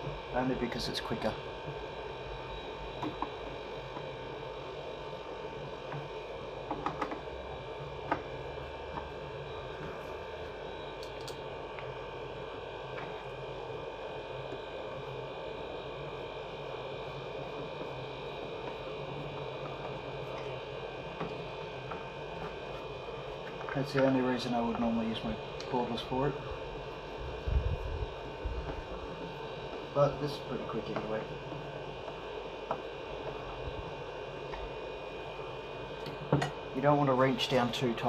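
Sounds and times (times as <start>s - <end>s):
electrical hum: 0.0s - 38.0s
screwdriver clicks: 11.0s - 11.4s.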